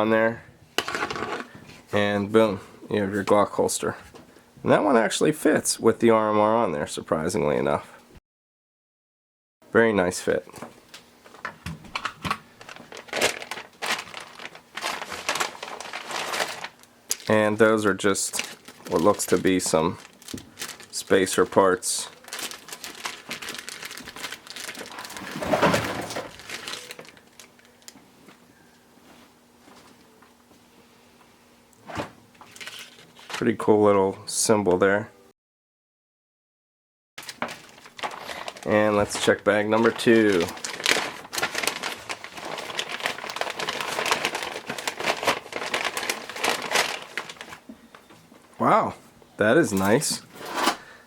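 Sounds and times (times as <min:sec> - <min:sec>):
plastic packaging crinkling: 0:12.0 - 0:28.0, 0:37.2 - 0:48.1
plastic bag crackling rustle: 0:12.5 - 0:28.0, 0:37.2 - 0:48.6.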